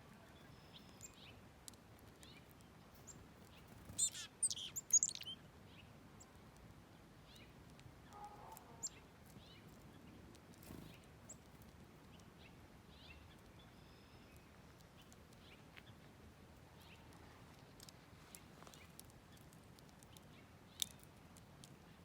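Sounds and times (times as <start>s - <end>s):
high bird chirps: 3.1s - 5.4s.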